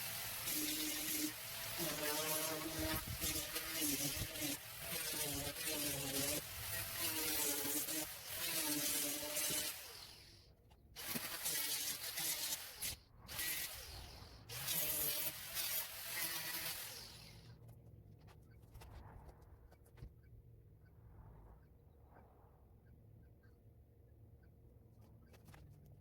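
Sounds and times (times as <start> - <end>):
electric sander on wood: 0.0 - 10.4, 11.0 - 17.4.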